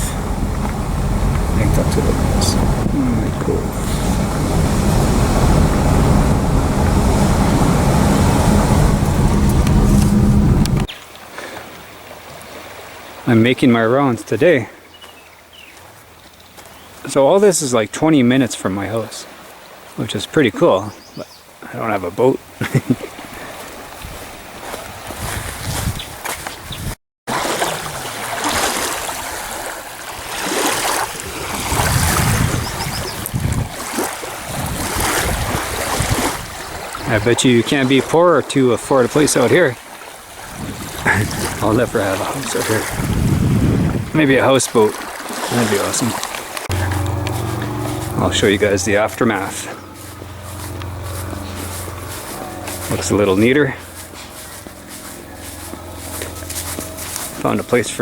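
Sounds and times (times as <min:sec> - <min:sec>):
car road and engine noise: 0:00.0 - 0:10.9, 0:45.1 - 0:58.0
wind gusting on microphone: 0:00.0 - 0:10.9, 0:23.9 - 0:27.0, 0:31.2 - 0:37.3, 0:40.3 - 0:45.1
waves lapping at shore: 0:00.0 - 0:26.6, 0:27.3 - 0:58.0.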